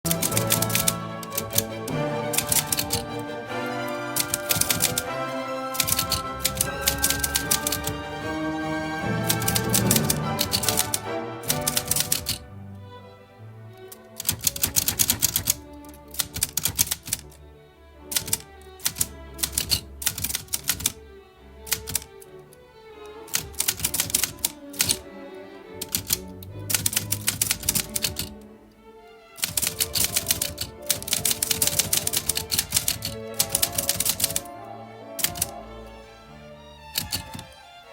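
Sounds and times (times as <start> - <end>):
soft background music: 0.0 - 37.9
typewriter keys clicking: 0.1 - 1.7, 2.3 - 3.1, 4.2 - 5.1, 5.8 - 8.0, 9.2 - 12.4, 14.2 - 17.3, 18.1 - 21.0, 21.7 - 22.1, 23.3 - 25.0, 25.8 - 28.3, 29.4 - 34.5, 35.2 - 35.6, 37.0 - 37.5.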